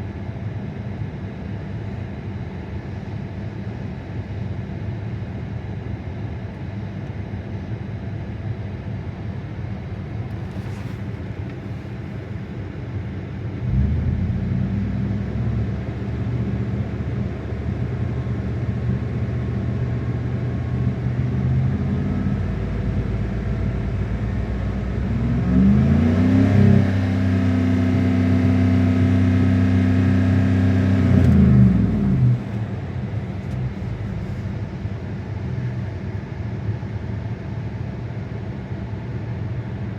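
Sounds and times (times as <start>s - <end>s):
misfiring car engine revving: 24.9s - 35.3s.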